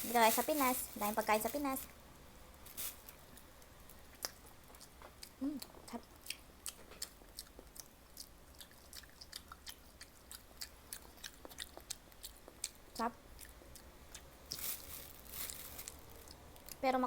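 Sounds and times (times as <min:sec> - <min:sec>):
chewing with wet mouth clicks: 0:04.1 - 0:14.6.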